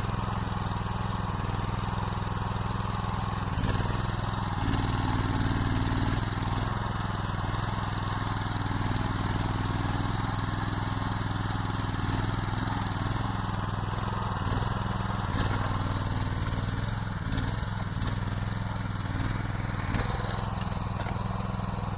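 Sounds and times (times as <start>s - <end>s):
loader engine running: 0.0s - 21.9s.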